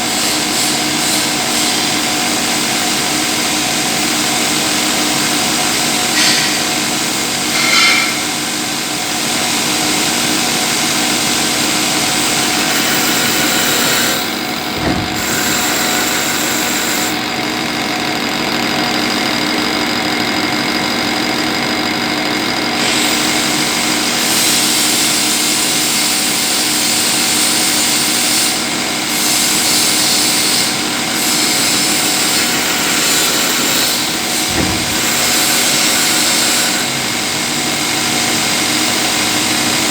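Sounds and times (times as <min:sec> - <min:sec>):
lathe humming: 0:10.0 - 0:39.9.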